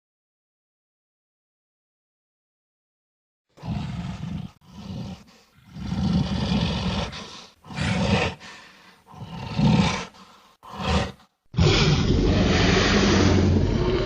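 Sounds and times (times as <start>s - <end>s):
deep rasping dinosaur roars: 3.6s - 14.0s.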